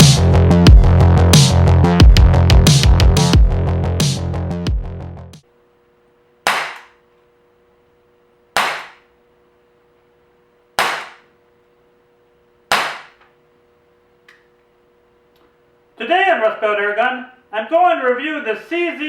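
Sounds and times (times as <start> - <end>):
air pistol shots: 6.5 - 7.0, 8.6 - 9.0, 10.8 - 11.3, 12.7 - 13.2.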